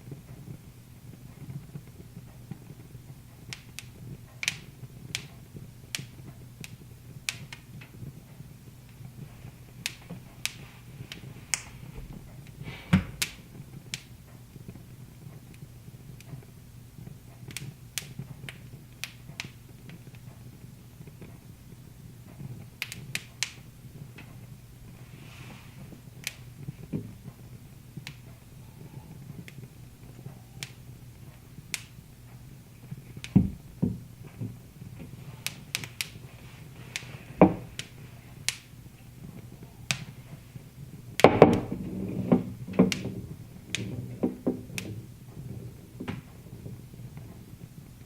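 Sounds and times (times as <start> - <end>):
wood fire crackling and popping: 0.0 - 48.0
low steady rumble: 23.6 - 48.0.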